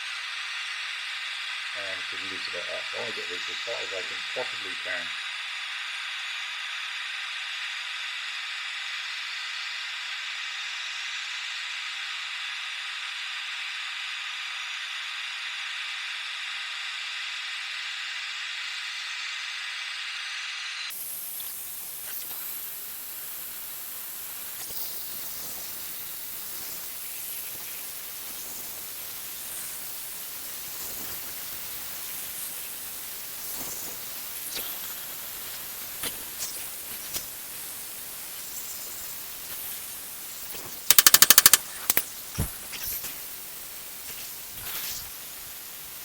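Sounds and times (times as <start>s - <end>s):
torch flame hissing: 20.9s - 46.0s.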